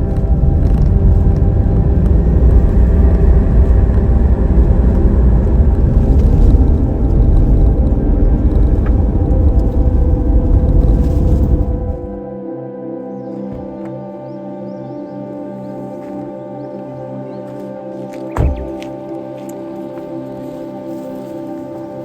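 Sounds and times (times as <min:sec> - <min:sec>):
vehicle engine and road rumble: 0:00.0 - 0:12.2
steady tonal drone: 0:00.0 - 0:22.0.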